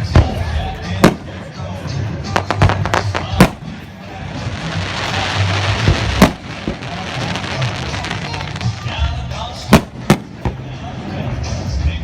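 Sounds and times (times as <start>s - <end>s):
fireworks crackling hiss: 2.3s - 10.2s
firework bang: 4.6s - 8.8s.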